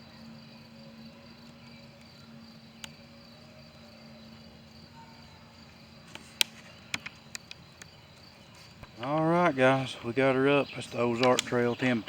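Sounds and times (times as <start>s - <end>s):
insects buzzing: 0.0s - 12.0s
sharp click: 11.2s - 11.6s.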